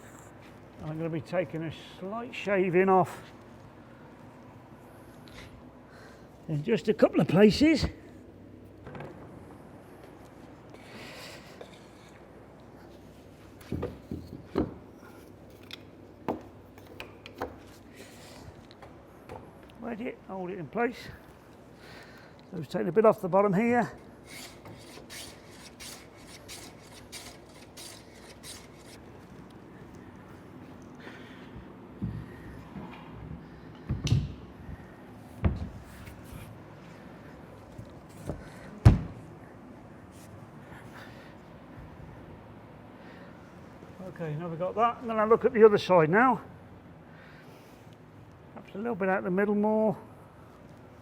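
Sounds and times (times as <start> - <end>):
wooden knocks and thuds: 38.3 - 39.2
wooden door knocks and bumps: 38.9 - 39.2.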